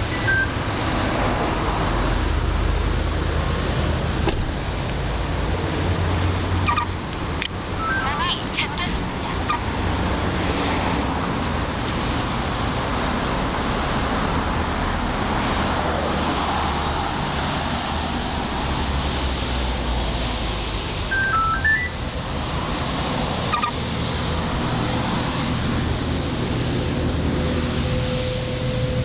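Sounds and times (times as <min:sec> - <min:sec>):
electronic beeps melody: 0:00.1 - 0:00.6, 0:07.8 - 0:08.3, 0:21.1 - 0:22.0.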